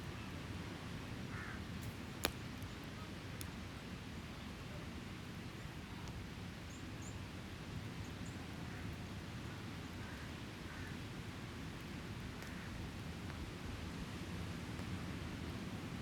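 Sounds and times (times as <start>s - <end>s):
campfire crackle: 0.9s - 6.7s, 10.3s - 16.0s.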